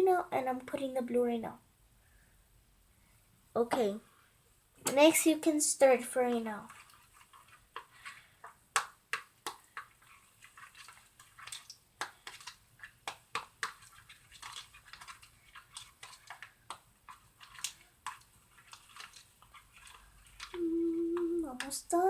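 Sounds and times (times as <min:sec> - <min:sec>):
slime squelching while stirred: 0:05.9 - 0:22.0.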